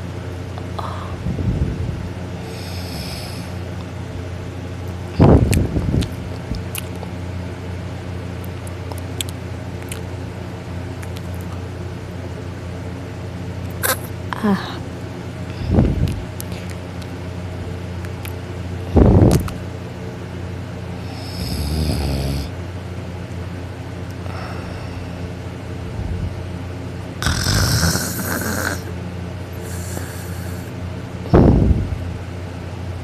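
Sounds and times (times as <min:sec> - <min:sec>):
steady low hum: 0:00.0 - 0:33.0
person snoring: 0:02.4 - 0:03.6, 0:21.0 - 0:22.5, 0:27.2 - 0:28.9, 0:29.6 - 0:30.7.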